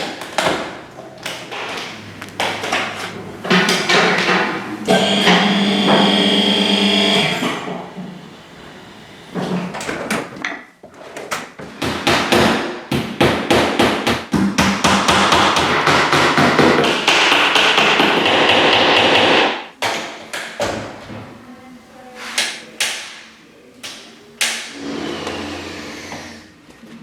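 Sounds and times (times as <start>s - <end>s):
hammering: 0.1s - 10.4s, 11.8s - 20.0s.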